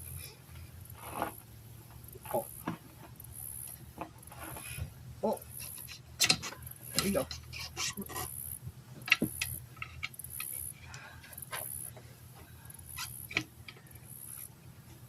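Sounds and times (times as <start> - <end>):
tire levers knocking on rim: 9.0 - 10.5.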